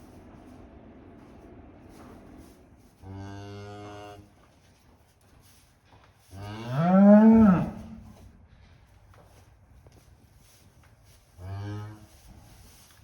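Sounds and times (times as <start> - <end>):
cattle mooing: 6.4 - 8.0.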